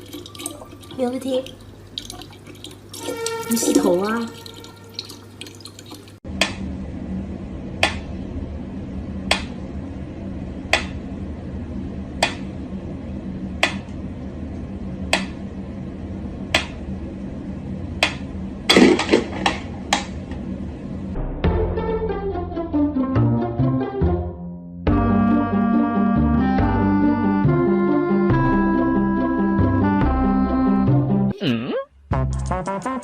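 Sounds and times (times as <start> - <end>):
steady low hum: 6.1 - 21.4.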